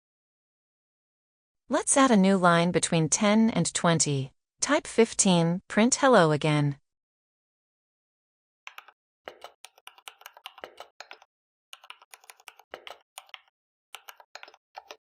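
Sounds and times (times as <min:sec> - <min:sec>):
computer keyboard typing: 0:08.7 - 0:15.0.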